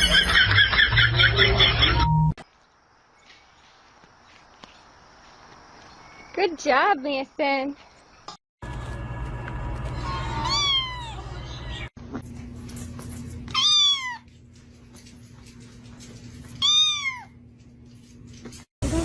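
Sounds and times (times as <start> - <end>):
cat meowing: 10.0 - 11.5, 13.5 - 14.3, 16.6 - 17.3.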